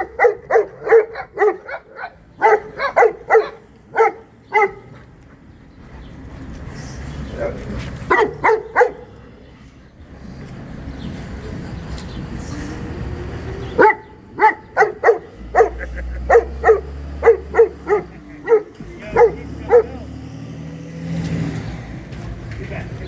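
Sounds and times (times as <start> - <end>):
dog barking: 0.0 - 4.9, 7.4 - 9.1, 13.6 - 20.0.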